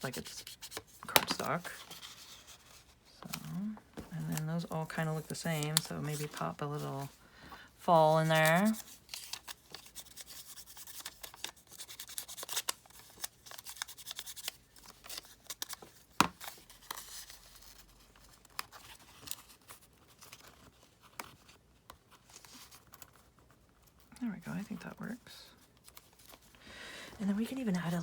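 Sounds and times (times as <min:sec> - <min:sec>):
paper rustling and sliding: 0:00.0 - 0:07.2.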